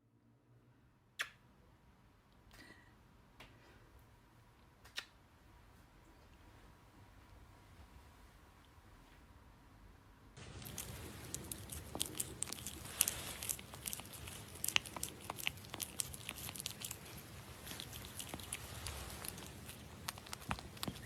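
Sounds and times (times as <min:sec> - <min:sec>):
crisp crunching clicks: 0:10.4 - 0:21.0.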